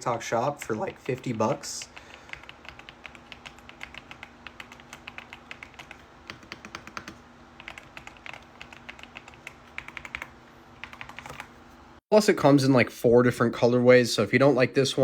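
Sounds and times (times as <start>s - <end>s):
mechanical keyboard typing: 0.6s - 11.5s.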